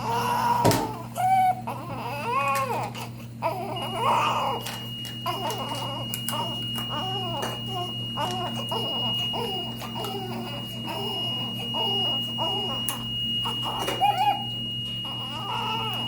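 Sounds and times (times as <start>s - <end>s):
infant squeaky noisy breathing: 0.0s - 16.0s
steady high electronic tone: 3.7s - 16.0s.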